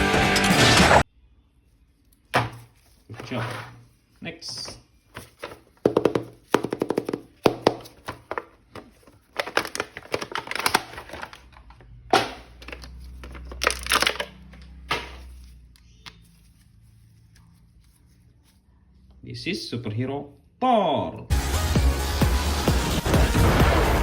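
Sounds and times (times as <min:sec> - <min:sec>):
packaging crinkling and tearing: 0:07.9 - 0:11.9, 0:12.5 - 0:15.5.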